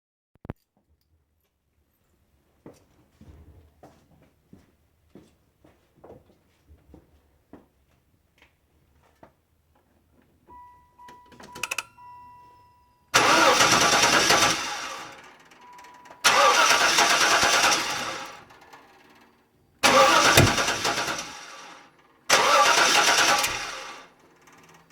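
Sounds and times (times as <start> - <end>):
starter cranking engine: 16.2 - 18.3, 19.8 - 21.6, 22.3 - 24.0
ignition key clicks: 20.0 - 21.3.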